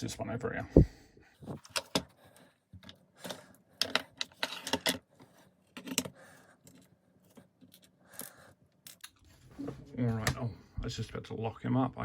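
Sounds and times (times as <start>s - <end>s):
lock parts clicking and clattering: 2.8s - 5.1s, 5.7s - 9.2s.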